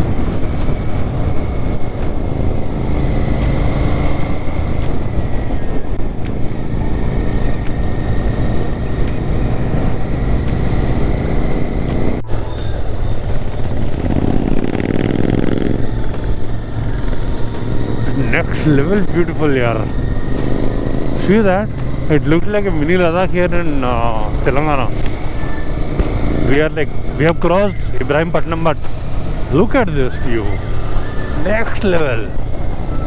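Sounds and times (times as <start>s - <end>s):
wind rush on microphone: 0.0s - 23.7s
motorcycle engine running: 0.0s - 33.0s.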